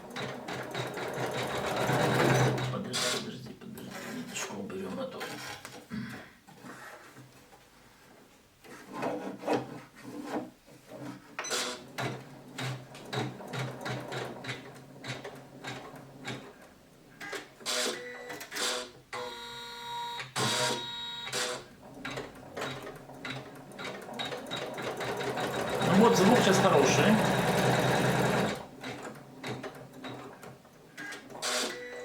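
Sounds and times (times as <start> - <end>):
embroidery machine stitching: 0.0 - 3.3, 11.5 - 18.9, 20.4 - 31.8.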